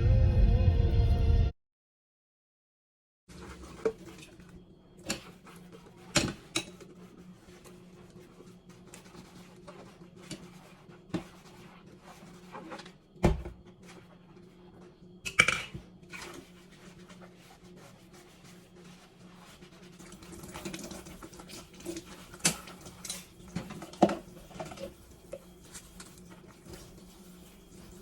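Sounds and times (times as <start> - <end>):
dishes and utensils clinking: 15.3 - 15.8.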